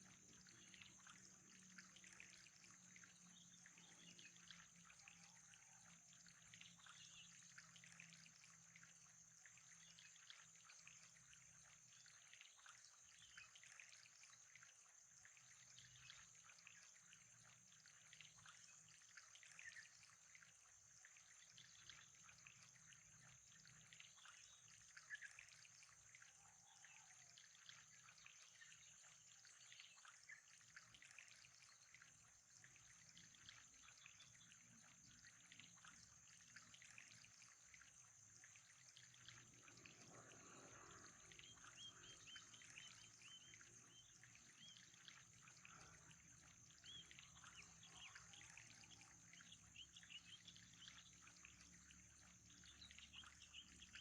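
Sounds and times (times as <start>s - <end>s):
water trickling: 0.0s - 54.0s.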